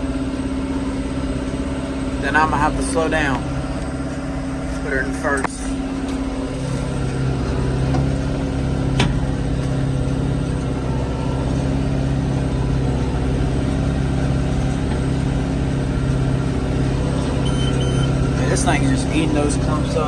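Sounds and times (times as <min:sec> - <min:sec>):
tractor engine running under load: 0:00.0 - 0:20.0
baler pickup feeding hay: 0:06.0 - 0:20.0.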